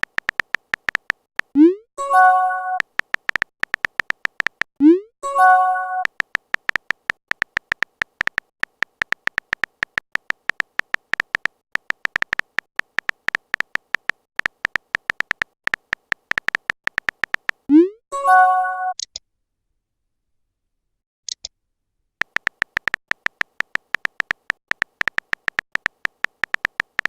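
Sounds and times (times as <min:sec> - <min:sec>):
phone keyboard typing clicks: 0:00.0 - 0:04.7, 0:05.4 - 0:17.7, 0:22.2 - 0:27.0.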